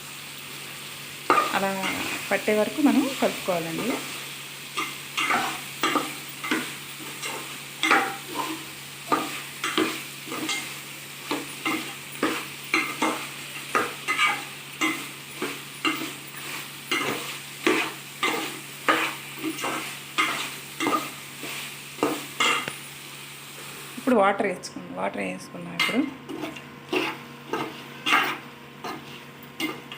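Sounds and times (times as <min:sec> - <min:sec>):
frying sizzle: 0:00.0 - 0:29.9
utensil scraping a pan: 0:11.3 - 0:22.7, 0:25.8 - 0:29.9.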